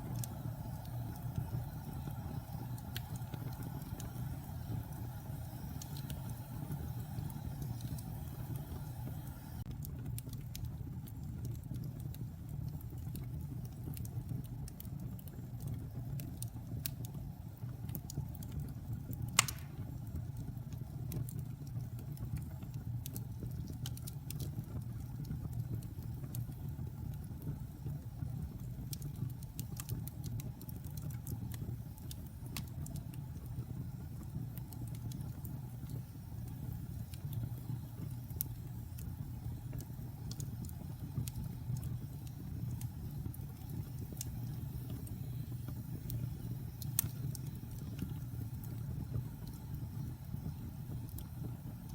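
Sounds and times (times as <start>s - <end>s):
wood fire rumbling and crackling: 0.0s - 51.9s
loud pop from fire: 19.4s - 20.0s.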